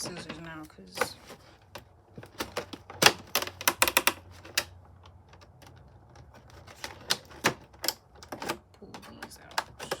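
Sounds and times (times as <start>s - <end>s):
plastic packaging clicking and snapping: 1.7s - 10.0s.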